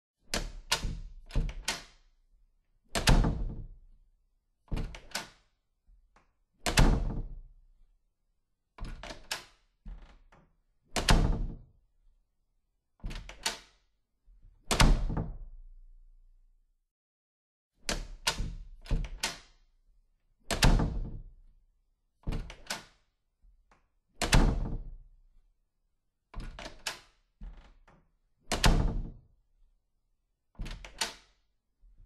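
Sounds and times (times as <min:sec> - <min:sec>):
door shutting with heavy thud: 0:06.7 - 0:07.3, 0:11.0 - 0:11.6, 0:14.7 - 0:15.3, 0:20.5 - 0:21.2, 0:24.2 - 0:24.9, 0:28.5 - 0:29.2.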